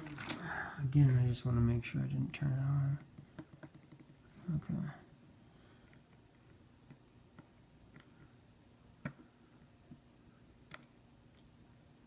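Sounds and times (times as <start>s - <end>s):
small tools tapping on phone: 3.0s - 4.2s.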